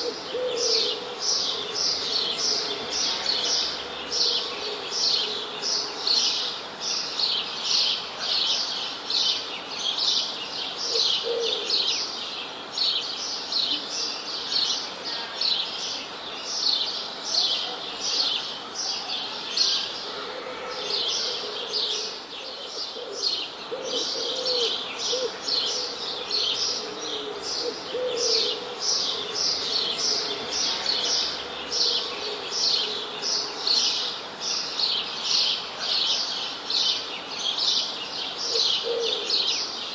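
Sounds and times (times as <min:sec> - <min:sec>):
birds chirping: 0:15.4 - 0:39.9.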